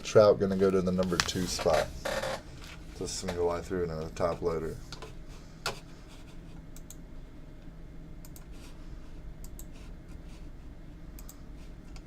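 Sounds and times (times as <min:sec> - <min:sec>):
low room hum: 0:00.0 - 0:12.0
computer clicks: 0:06.8 - 0:07.0, 0:08.2 - 0:08.5, 0:09.4 - 0:09.7, 0:11.2 - 0:12.0.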